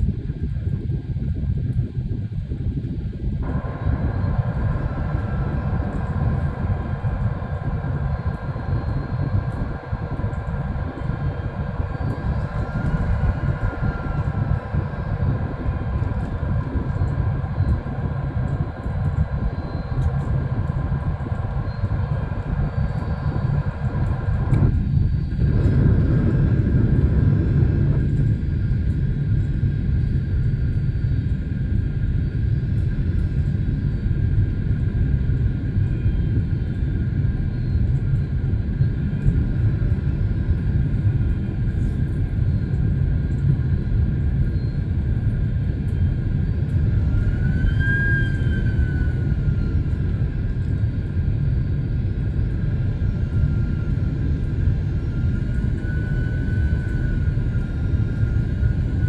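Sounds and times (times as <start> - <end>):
jet engine and airflow rumble: 0.0 - 59.0
brief whine: 47.0 - 50.0.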